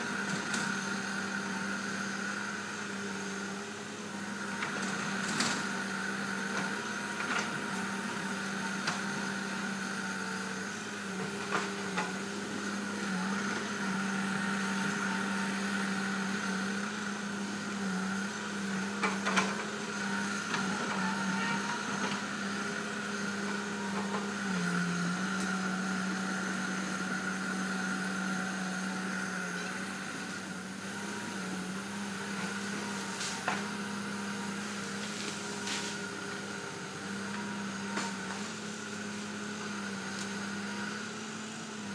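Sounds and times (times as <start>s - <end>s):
heavy diesel engine running: 0.0s - 41.9s.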